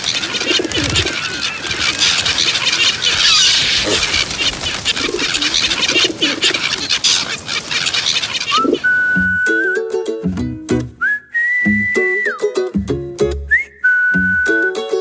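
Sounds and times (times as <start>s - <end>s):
pigeons cooing: 0.0s - 9.0s
wings rustling and flapping: 0.0s - 9.0s
whistled tune: 8.5s - 15.0s
ukulele: 8.8s - 15.0s.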